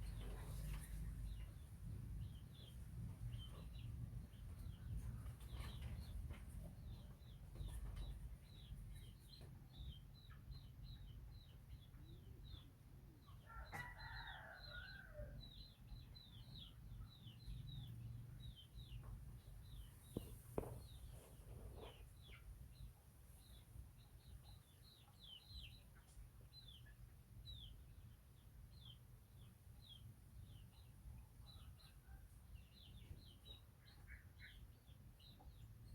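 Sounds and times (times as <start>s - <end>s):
birds chirping: 16.2s - 25.9s.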